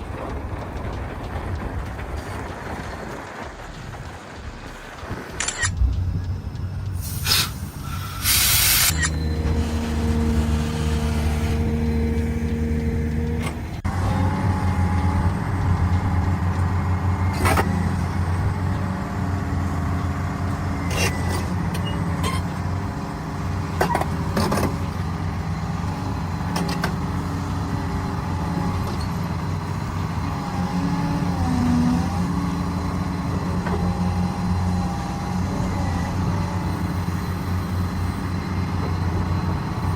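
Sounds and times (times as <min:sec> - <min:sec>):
diesel machinery running: 0:00.0 - 0:39.9
loud air hiss: 0:07.0 - 0:08.9.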